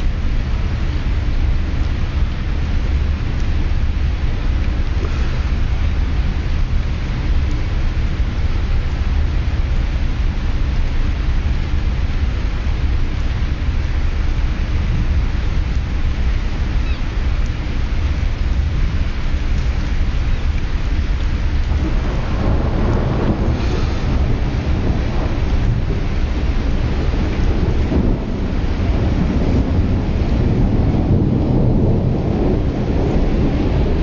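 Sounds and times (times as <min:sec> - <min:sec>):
ferry engines rumbling: 0:00.0 - 0:34.0
wind on microphone: 0:00.0 - 0:34.0
boat wake rushing: 0:11.5 - 0:34.0.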